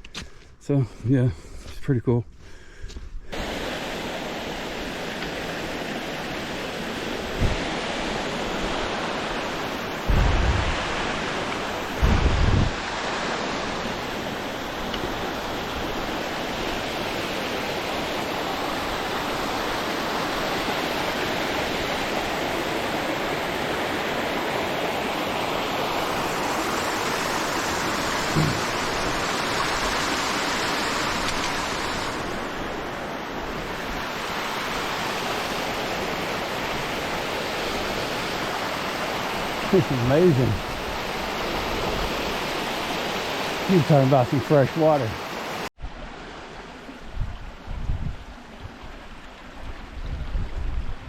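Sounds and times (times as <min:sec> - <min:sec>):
rushing running water: 0:03.3 - 0:51.0
low thumps on microphone: 0:10.1 - 0:10.8, 0:12.0 - 0:12.8.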